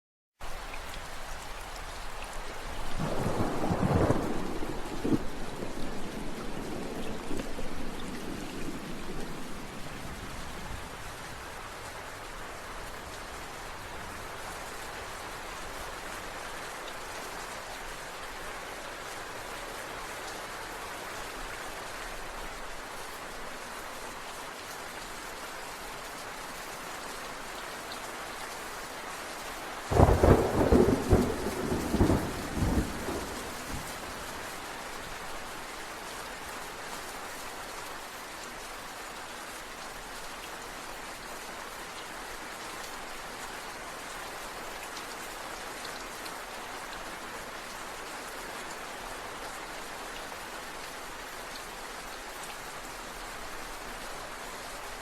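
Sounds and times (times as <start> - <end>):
steady rain: 0.4 - 55.0
crackling thunderclap: 3.0 - 11.0, 29.9 - 34.5.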